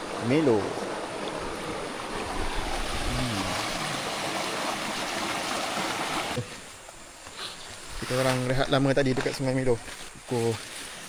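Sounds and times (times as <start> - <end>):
river water flowing: 0.0 - 7.2.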